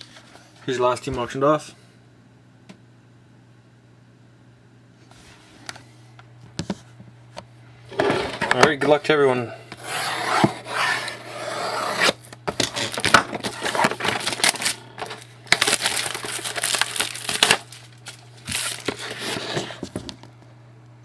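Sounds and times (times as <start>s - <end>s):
packs being torn open: 12.5s - 19.5s.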